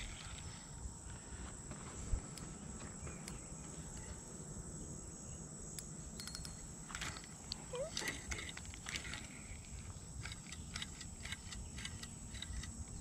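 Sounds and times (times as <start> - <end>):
insects trilling: 0.0 - 13.0
pulsing insect call: 0.0 - 13.0.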